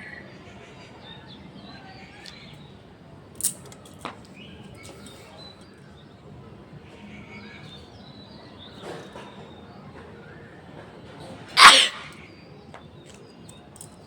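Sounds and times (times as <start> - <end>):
short sharp puff of air: 11.6 - 12.2.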